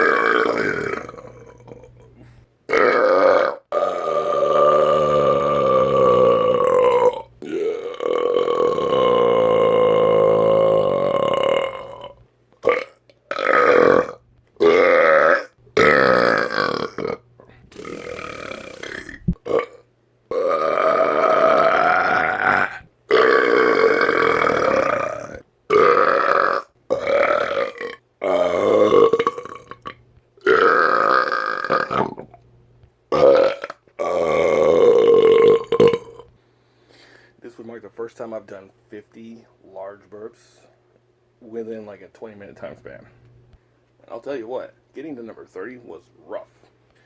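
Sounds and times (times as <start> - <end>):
man burping: 0.0 - 32.4, 33.1 - 36.3.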